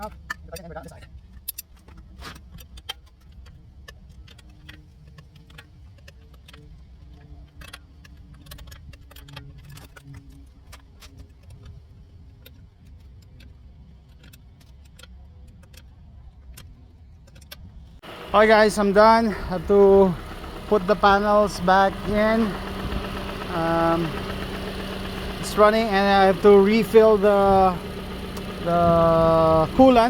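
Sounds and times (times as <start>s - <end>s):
sharp clicks and light knocks: 16.5s - 30.0s
car engine idling: 18.0s - 30.0s.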